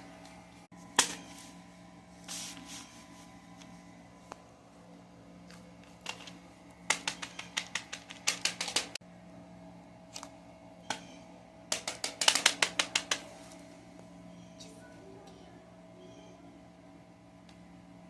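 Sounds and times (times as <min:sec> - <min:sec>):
steady low hum: 0:00.0 - 0:18.0
rapid sharp clicks: 0:11.7 - 0:13.3.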